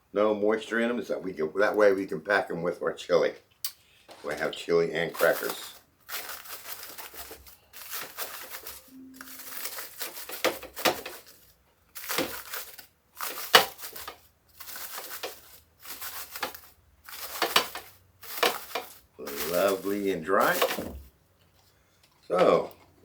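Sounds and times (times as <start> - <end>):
dried food crunching: 4.1 - 21.6.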